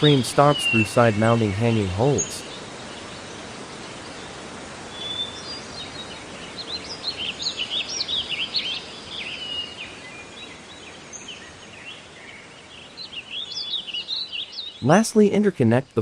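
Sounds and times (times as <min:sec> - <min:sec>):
background hiss: 0:00.0 - 0:16.0
small birds chirping: 0:00.0 - 0:16.0.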